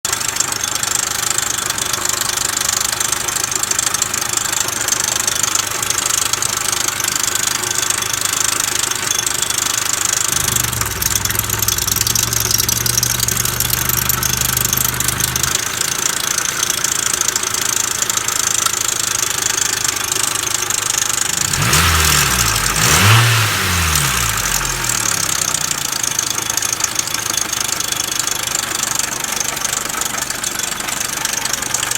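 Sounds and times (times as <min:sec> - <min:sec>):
car engine running: 0:00.1 - 0:31.9
engine revving: 0:10.2 - 0:16.4, 0:21.0 - 0:26.7
low steady hum: 0:10.3 - 0:15.7.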